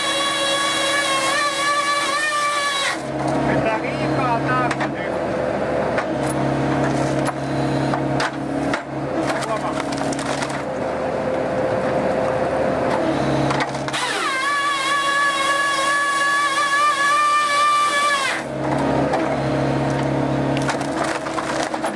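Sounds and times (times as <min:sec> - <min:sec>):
engine and hydraulic hum: 0:00.0 - 0:21.9
machine whine: 0:00.0 - 0:21.9
logs cracking and splitting: 0:09.2 - 0:10.8, 0:20.0 - 0:21.9.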